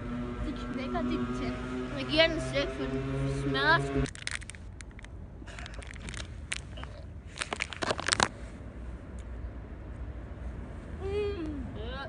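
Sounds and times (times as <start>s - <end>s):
hard candy crunching: 4.1s - 8.3s.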